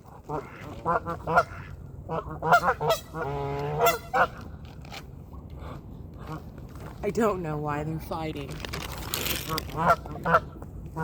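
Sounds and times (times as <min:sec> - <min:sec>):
geese honking: 0:00.0 - 0:04.4, 0:09.5 - 0:11.0.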